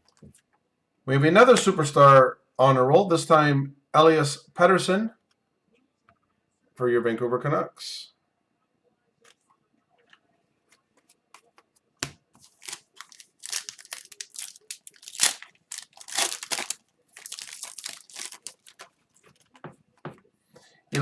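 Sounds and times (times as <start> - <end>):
wrapper crinkling and tearing: 12.4 - 19.6.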